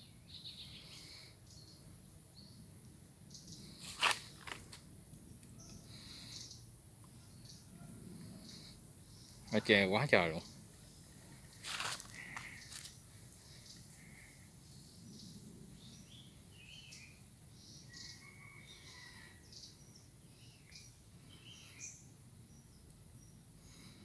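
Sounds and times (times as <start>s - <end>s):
birds chirping: 5.5s - 24.0s.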